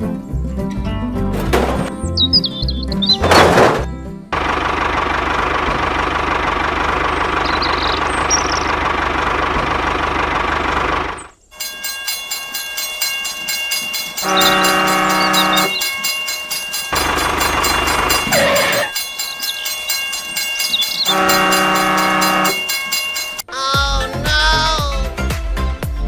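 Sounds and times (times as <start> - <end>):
fast regular train clicking: 4.4 - 23.4
train rumble: 12.6 - 23.4
train horn blast: 14.2 - 15.8, 21.1 - 22.7.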